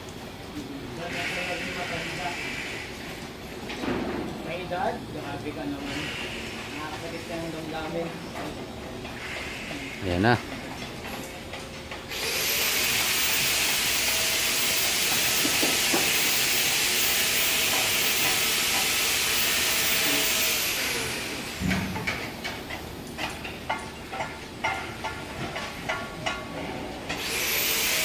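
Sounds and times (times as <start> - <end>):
welding arc hissing with whine: 1.0 - 3.0, 12.1 - 22.3, 27.2 - 28.0.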